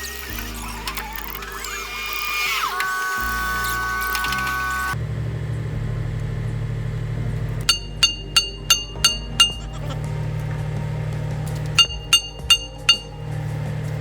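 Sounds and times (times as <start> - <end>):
steady low hum: 0.0 - 14.0
hammer blows on steel: 7.7 - 10.1, 11.8 - 13.5.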